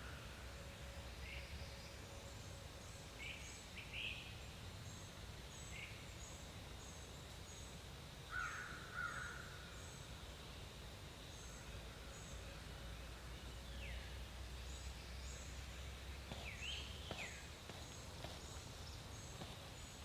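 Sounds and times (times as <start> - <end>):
loud bird calls: 16.3 - 20.0.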